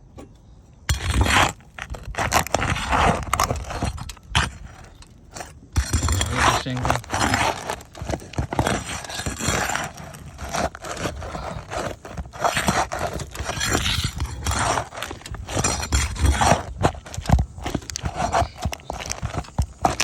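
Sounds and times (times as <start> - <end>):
roof shingles scraping and crunching: 0.9 - 20.0.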